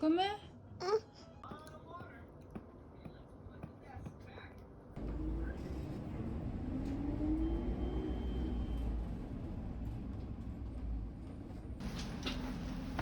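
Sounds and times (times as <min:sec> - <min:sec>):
engine and road noise rumble: 0:05.0 - 0:13.0.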